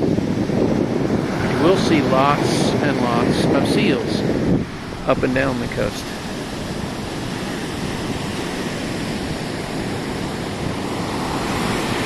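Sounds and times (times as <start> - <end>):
ocean surf washing onto beach: 0.0 - 12.0.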